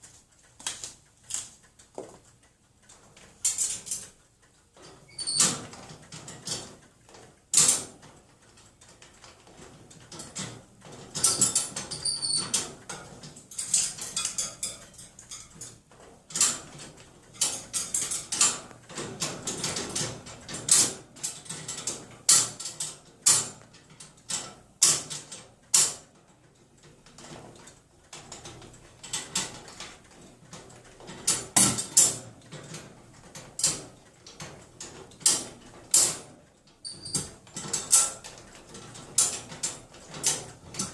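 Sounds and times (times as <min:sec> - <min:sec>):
metal cage doors clanking: 0:09.6 - 0:26.0, 0:30.9 - 0:32.9, 0:33.5 - 0:40.9.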